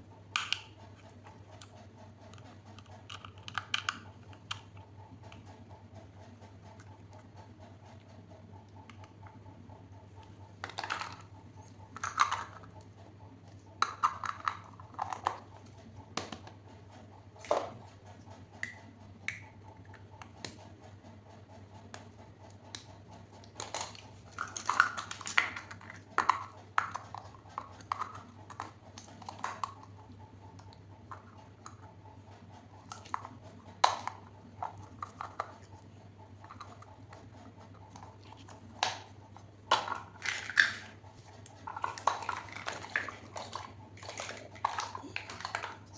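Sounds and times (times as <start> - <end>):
plastic pieces clicking and tapping: 0.3 - 5.6, 10.2 - 12.9, 13.8 - 16.6, 21.9 - 31.8, 32.8 - 45.9.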